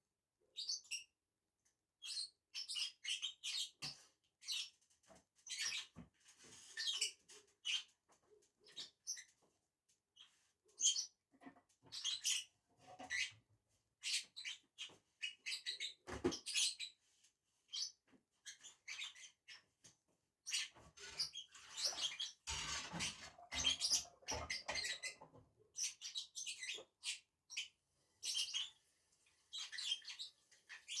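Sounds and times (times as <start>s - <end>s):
birds chirping and chattering: 20.5s - 28.7s.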